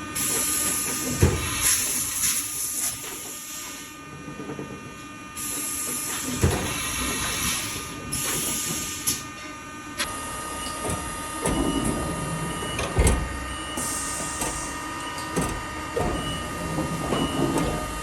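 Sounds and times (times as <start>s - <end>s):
machining center whine: 3.8s - 18.0s
machine clunks and knocks: 6.2s - 7.4s, 10.6s - 18.0s.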